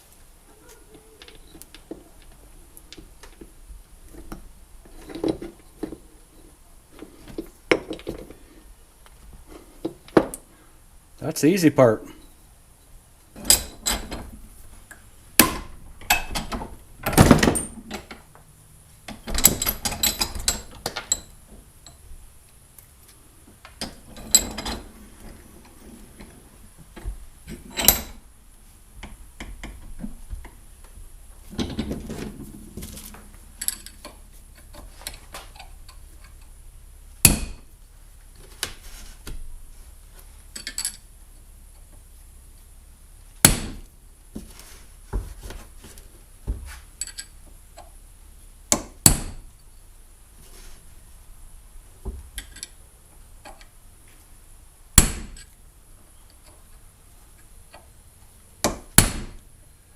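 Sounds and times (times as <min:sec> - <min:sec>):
parts rattling and scraping: 0:00.5 - 0:10.4, 0:12.1 - 0:36.8, 0:37.4 - 0:42.3, 0:44.3 - 0:48.1, 0:52.0 - 0:54.3.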